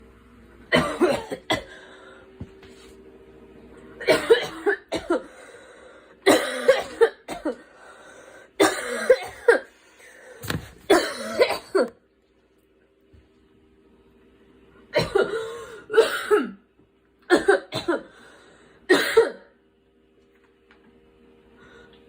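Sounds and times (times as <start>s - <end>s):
girl coughing: 0.7s - 1.8s, 4.0s - 5.3s, 6.2s - 7.7s, 8.6s - 9.8s, 10.9s - 12.0s, 15.0s - 16.6s, 17.3s - 18.1s, 18.9s - 19.6s.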